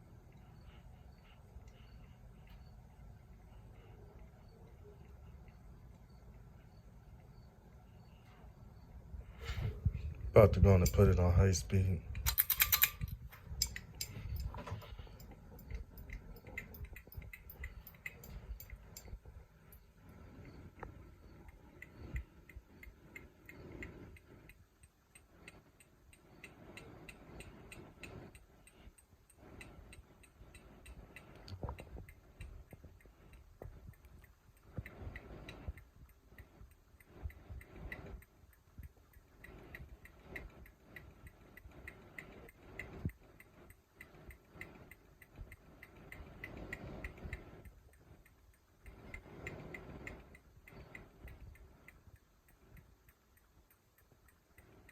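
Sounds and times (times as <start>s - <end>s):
ceiling fan ticking: 0.0s - 54.9s
rumble of moving air: 8.8s - 24.6s.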